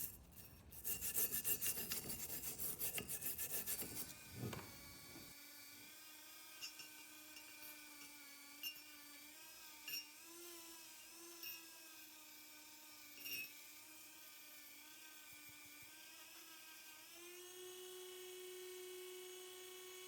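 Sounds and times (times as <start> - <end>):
hand rubbing on metal: 0.0 - 5.2
small rotary tool running: 0.0 - 20.0.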